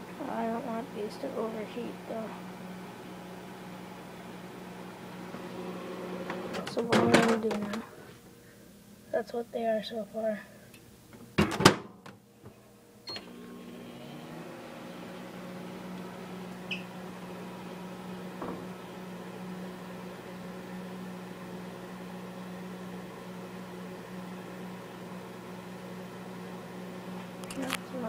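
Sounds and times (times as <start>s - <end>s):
microwave humming: 0.0s - 9.0s, 10.8s - 28.0s
microwave oven click: 13.1s - 14.0s.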